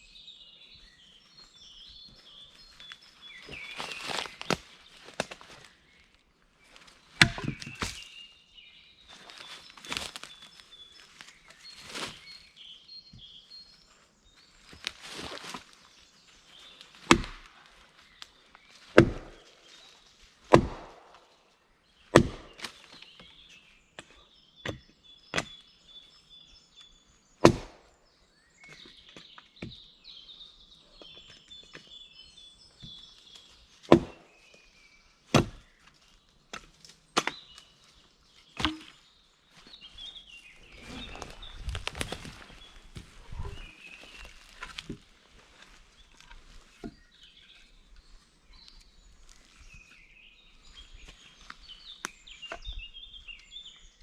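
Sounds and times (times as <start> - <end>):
blade chopping wood: 7.2 - 8.0, 17.0 - 17.5, 18.9 - 19.4, 20.5 - 21.2, 22.1 - 22.9, 27.4 - 27.8, 33.8 - 34.4, 35.3 - 35.8, 36.5 - 37.7, 38.6 - 39.0.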